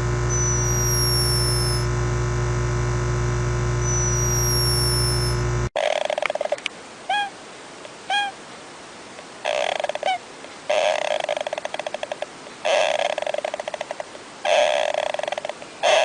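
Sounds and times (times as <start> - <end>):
animal chirps: 0.3 - 1.8, 3.8 - 7.3, 8.1 - 8.4, 9.5 - 16.0
animal chattering: 5.8 - 7.3, 9.4 - 16.0.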